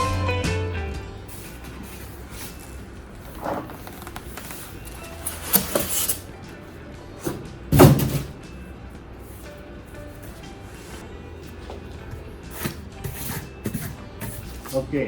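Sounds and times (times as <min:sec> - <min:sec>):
background music: 0:00.0 - 0:15.0
packaging scraping and rustling: 0:01.3 - 0:06.3.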